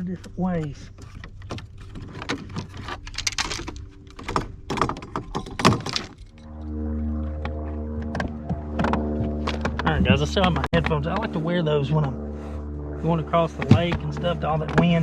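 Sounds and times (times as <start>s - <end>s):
trolling motor humming: 0.0s - 15.0s
knocks and clattering in a boat: 0.4s - 6.1s, 8.0s - 11.3s, 13.6s - 15.0s.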